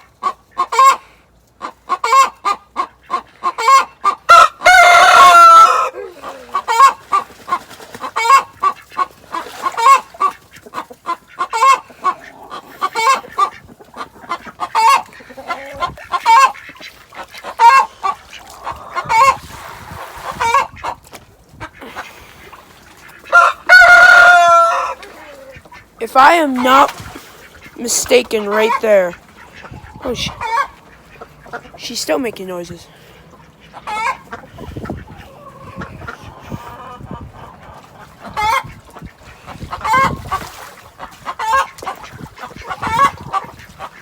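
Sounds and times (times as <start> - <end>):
hen clucking: 0.0 - 44.0
hen squawking: 1.6 - 19.4, 21.7 - 37.1.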